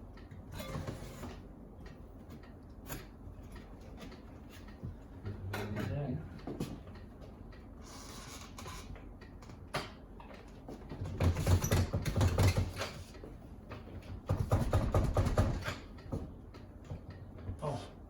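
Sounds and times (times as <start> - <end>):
knocks on wood: 14.2 - 16.3.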